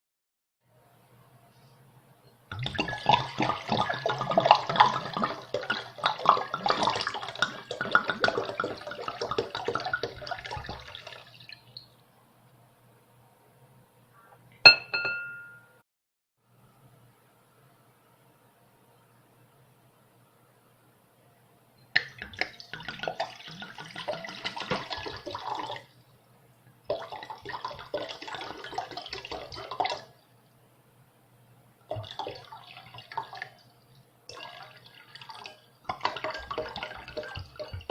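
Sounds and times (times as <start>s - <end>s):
water glugging into a bowl: 2.5s - 11.9s, 22.0s - 25.9s, 26.9s - 30.2s, 31.9s - 33.7s, 34.3s - 37.9s.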